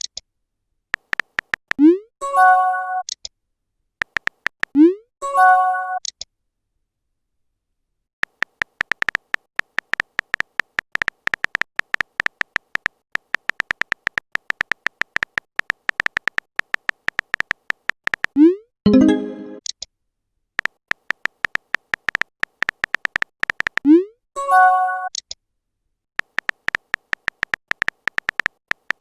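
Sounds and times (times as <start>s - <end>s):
phone keyboard typing taps: 1.0s - 1.8s, 4.0s - 4.8s, 8.2s - 18.4s, 20.6s - 23.9s, 26.2s - 29.0s
message sent notification chime: 18.9s - 19.6s.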